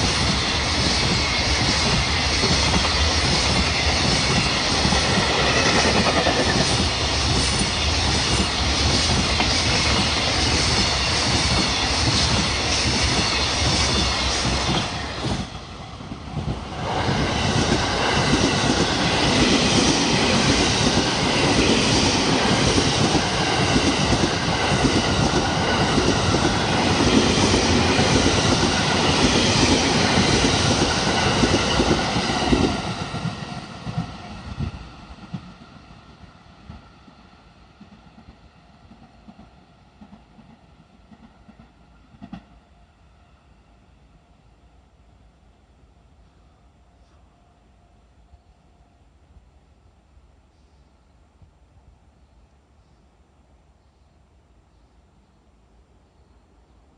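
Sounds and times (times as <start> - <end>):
freight train wheels clattering: 0.0 - 15.6.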